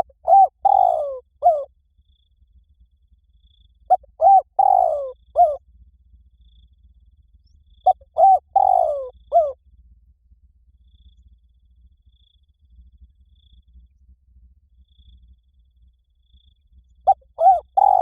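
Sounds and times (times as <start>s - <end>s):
dove cooing: 0.0s - 1.7s, 3.9s - 5.6s, 7.8s - 9.6s, 17.0s - 18.0s.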